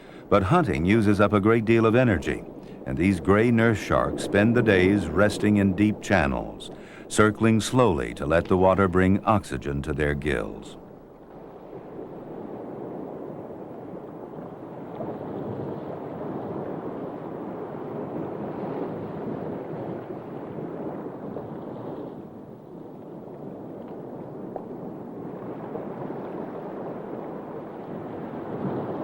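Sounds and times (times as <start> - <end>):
rushing water: 0.0 - 22.2.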